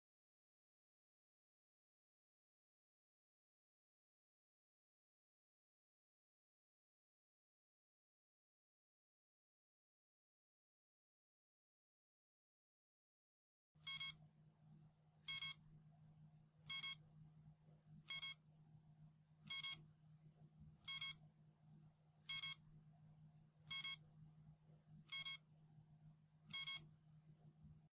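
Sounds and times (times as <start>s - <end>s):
timer alarm bursts: 13.9s - 14.1s, 15.3s - 15.6s, 16.7s - 17.0s, 18.1s - 18.4s, 19.5s - 19.8s, 20.9s - 21.2s, 22.3s - 22.6s, 23.7s - 24.0s, 25.1s - 25.4s, 26.5s - 26.8s.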